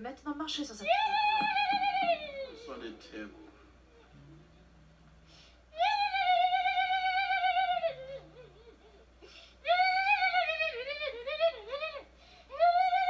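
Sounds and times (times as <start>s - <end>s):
woman singing with vibrato: 0.6s - 2.6s, 5.7s - 8.7s, 9.6s - 13.0s.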